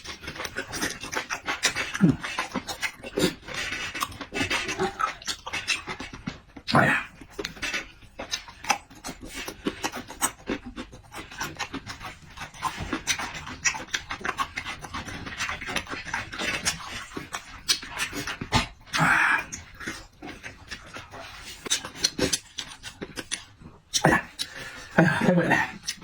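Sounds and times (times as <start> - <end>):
wet chewing and lip smacks: 0.0 - 25.0, 25.6 - 26.0
heavy breathing: 24.2 - 25.8.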